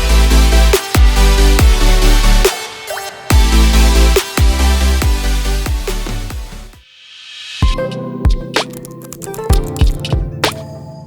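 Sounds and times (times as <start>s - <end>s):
electronic dance music: 0.0s - 6.8s.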